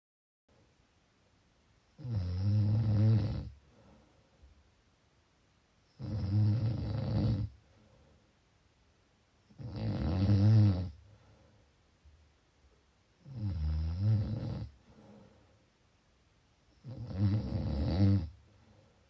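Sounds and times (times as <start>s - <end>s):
person snoring: 2.0s - 3.6s, 6.0s - 7.6s, 9.5s - 11.0s, 13.2s - 15.2s, 16.8s - 18.4s.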